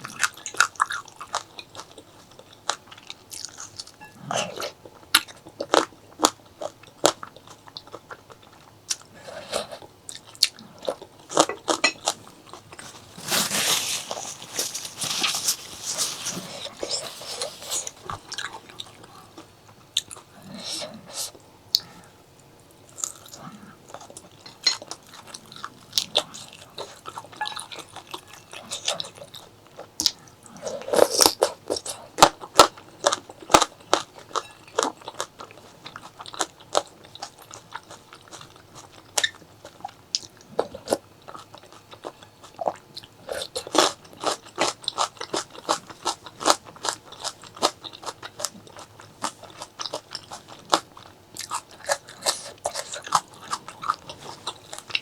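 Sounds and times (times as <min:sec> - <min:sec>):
crunchy biting and chewing: 0:00.0 - 0:22.0, 0:22.9 - 0:55.0.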